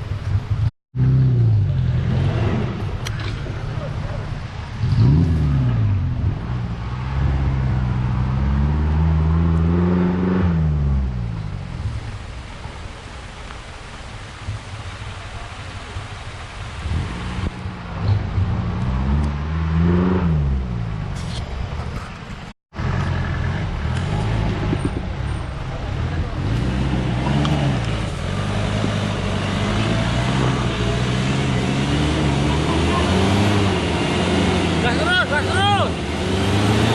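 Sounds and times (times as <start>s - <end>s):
engine revving hard: 4.8s - 11.1s, 18.4s - 20.8s, 26.4s - 36.9s.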